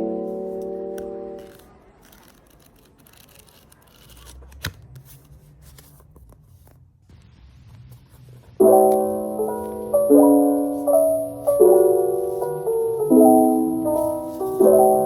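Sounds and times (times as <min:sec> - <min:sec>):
soft rustling: 0:13.6 - 0:15.0.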